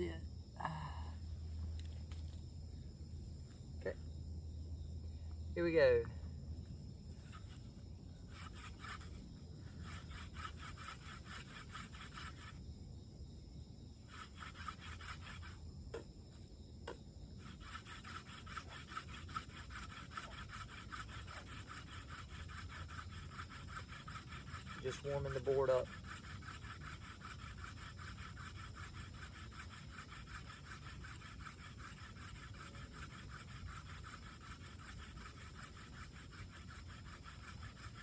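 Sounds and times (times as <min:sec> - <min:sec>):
hand drill rubbing on wooden board: 0:06.6 - 0:12.6, 0:13.9 - 0:38.0.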